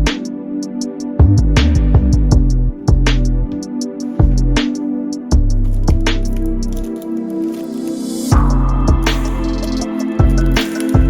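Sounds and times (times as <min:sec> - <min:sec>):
deep bass: 0:01.2 - 0:03.6, 0:05.4 - 0:06.8, 0:08.4 - 0:10.6
kick drums: 0:01.2 - 0:04.7, 0:05.3 - 0:06.3, 0:08.3 - 0:09.3, 0:10.2 - 0:11.0
drum machine beat: 0:01.3 - 0:06.9, 0:08.3 - 0:11.0
hi-hat ticks: 0:08.3 - 0:11.0.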